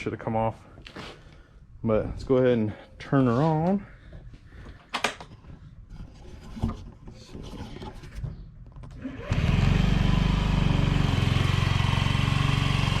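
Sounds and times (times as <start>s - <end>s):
scooter engine starting and idling: 8.9s - 13.0s.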